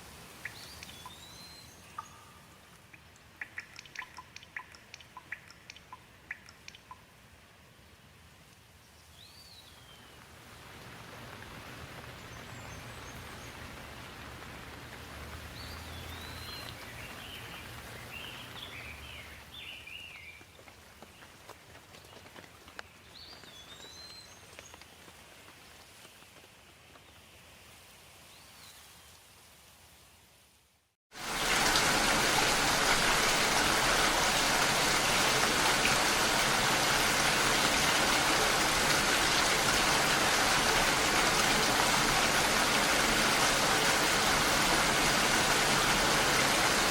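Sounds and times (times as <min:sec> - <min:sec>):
heavy rainfall: 0:10.2 - 0:22.6, 0:31.1 - 0:46.9.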